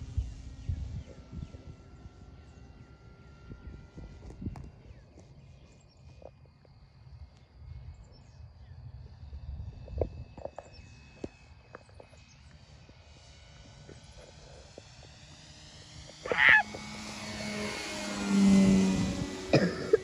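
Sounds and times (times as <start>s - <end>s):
wind rumble on microphone: 0.0s - 6.2s, 7.6s - 13.0s, 18.6s - 19.6s
distant model airplane engine drone: 0.0s - 20.0s.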